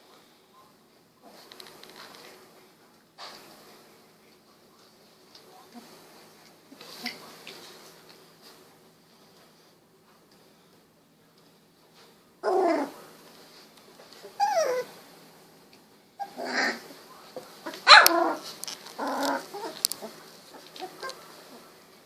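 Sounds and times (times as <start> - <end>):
puppy yelping and whining: 12.4 - 13.0, 14.2 - 14.9, 16.2 - 16.8, 17.7 - 21.2.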